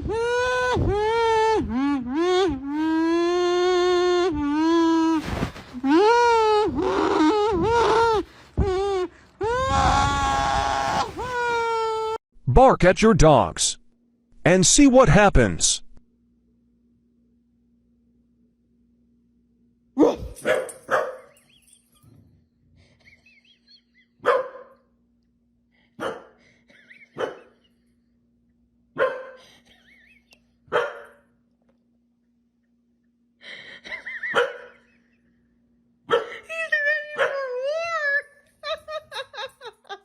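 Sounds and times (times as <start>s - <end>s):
dog howling: 8.9s - 12.1s
dog barking: 20.0s - 21.3s, 24.2s - 24.9s, 26.0s - 26.4s, 27.2s - 27.6s, 29.0s - 29.4s, 30.7s - 31.2s, 34.3s - 34.8s, 36.1s - 36.4s, 37.2s - 37.5s.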